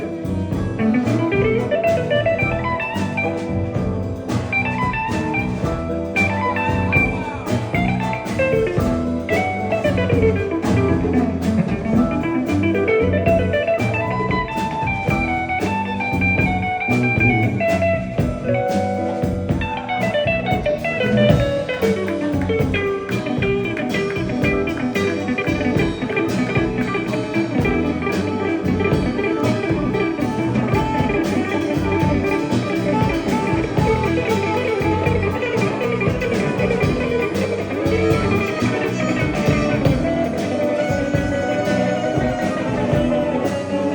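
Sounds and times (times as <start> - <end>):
drum kit beat: 0.0 - 43.9
guitar playing sliding lines: 0.0 - 43.9.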